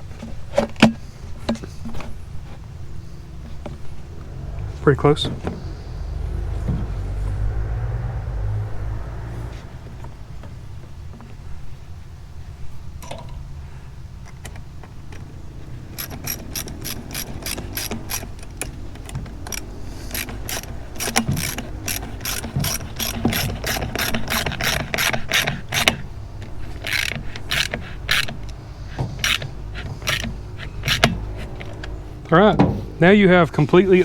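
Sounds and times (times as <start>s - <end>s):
socket ratchet clicking: 14.4s - 31.9s.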